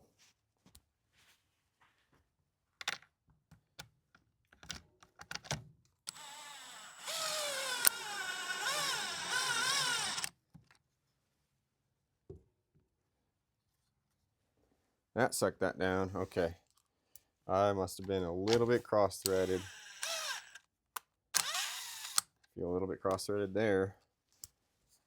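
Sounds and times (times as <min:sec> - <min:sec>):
power driver motor whine: 0:06.1 - 0:10.3, 0:19.3 - 0:20.6, 0:21.4 - 0:22.2.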